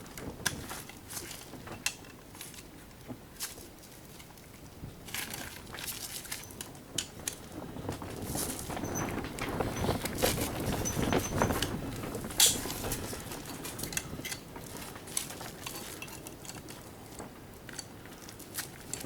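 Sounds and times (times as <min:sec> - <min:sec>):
small metal parts clinking and rattling: 0:08.2 - 0:16.9.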